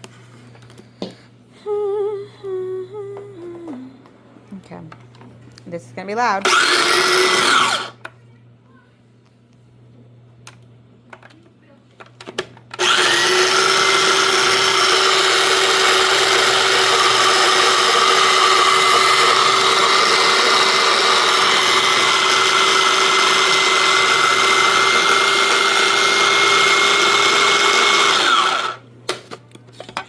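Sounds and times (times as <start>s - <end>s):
electric blender running: 6.4s - 8.0s, 12.8s - 28.8s.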